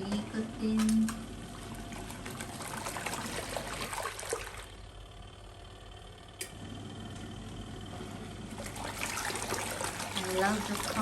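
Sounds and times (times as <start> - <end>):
washing machine sloshing water: 0.0 - 5.0, 8.4 - 11.0.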